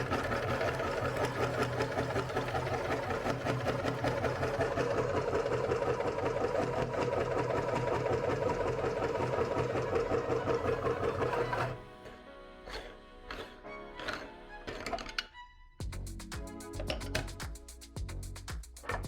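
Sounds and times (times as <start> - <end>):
meat grinder motor running: 0.0 - 11.8.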